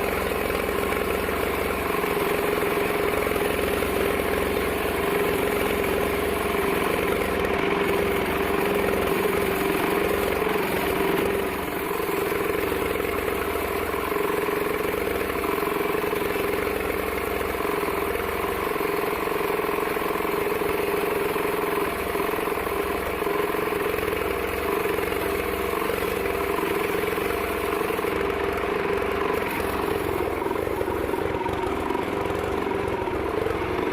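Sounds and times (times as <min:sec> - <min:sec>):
bandsaw droning: 0:25.8 - 0:33.9.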